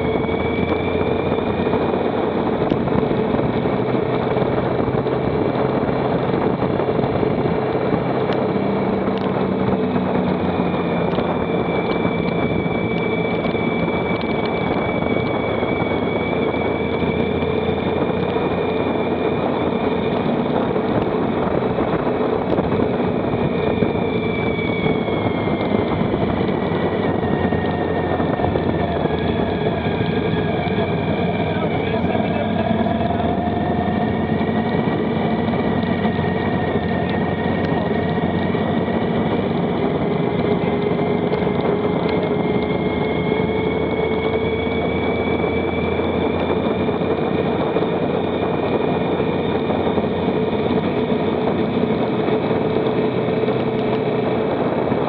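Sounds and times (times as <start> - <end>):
motorcycle engine cruising: 0.0 - 55.0
wind noise: 0.0 - 55.0.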